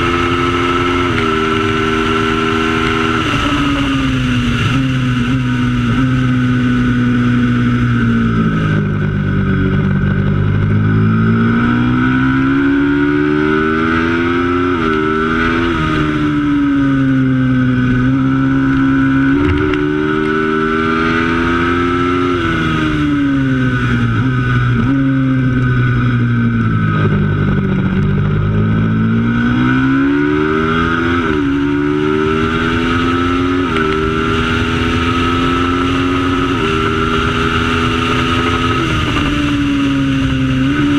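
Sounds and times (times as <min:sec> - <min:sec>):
racing motorcycle engine revving: 0:00.0 - 0:40.9.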